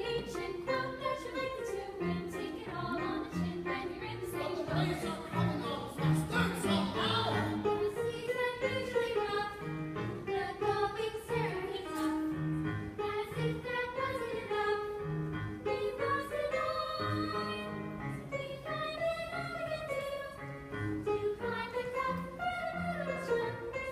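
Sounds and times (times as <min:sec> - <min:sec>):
young voices singing together: 0:00.0 - 0:23.9.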